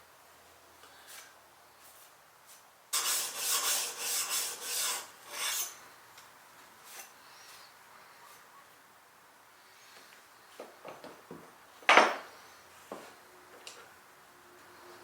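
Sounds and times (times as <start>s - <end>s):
blade rasping on sharpening stone: 2.9s - 5.8s.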